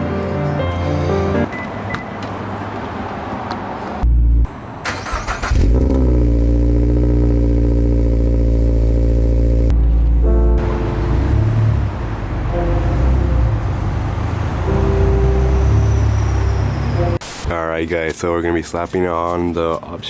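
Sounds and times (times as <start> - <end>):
car engine starting and running: 4.0 - 17.2.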